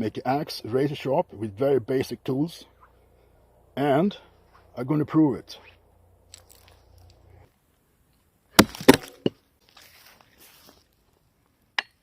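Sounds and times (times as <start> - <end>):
axe chopping wood: 8.6 - 9.4.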